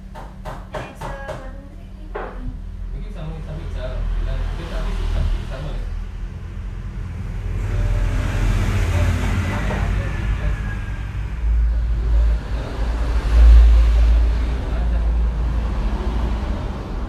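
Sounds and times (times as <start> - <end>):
steady low rumble: 1.9 - 17.0
vehicle passing by: 3.4 - 17.0.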